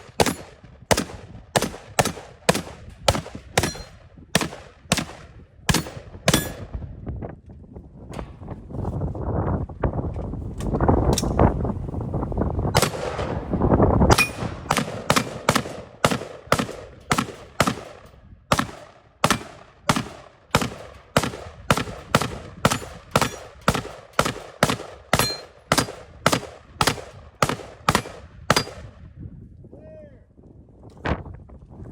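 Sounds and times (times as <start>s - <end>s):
rifle gunshots: 0.0s - 6.7s, 12.8s - 29.0s.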